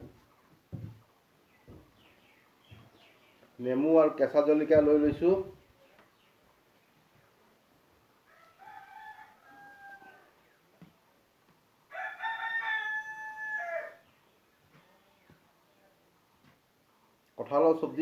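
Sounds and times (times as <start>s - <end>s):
rooster crowing: 8.3s - 10.4s, 11.9s - 14.0s.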